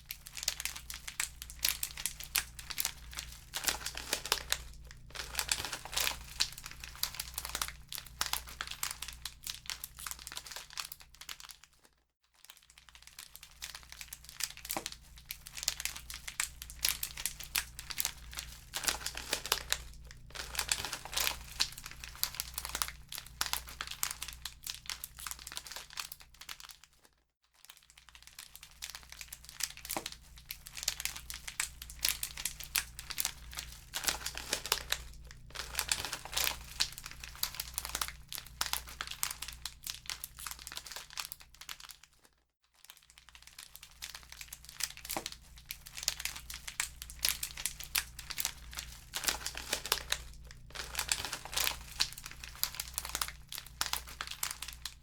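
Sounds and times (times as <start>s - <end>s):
low steady rumble: 0.0s - 8.9s, 15.9s - 23.9s
wood fire crackling and popping: 0.2s - 8.8s, 14.2s - 24.5s, 29.8s - 40.8s, 44.4s - 55.0s.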